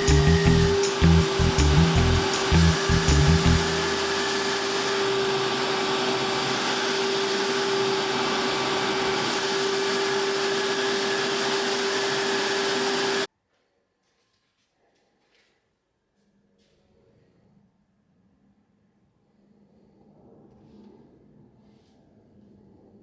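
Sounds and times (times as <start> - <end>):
rushing air: 0.0 - 13.3
small motor whirring: 0.0 - 13.3.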